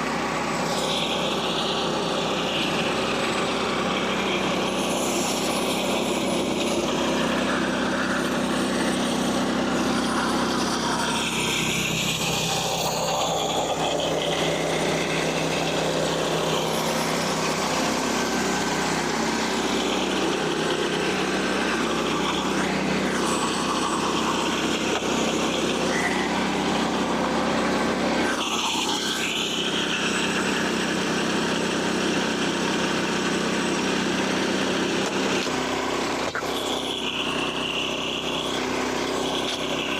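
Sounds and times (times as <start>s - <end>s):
sawmill engine sawing wood: 0.0s - 39.9s.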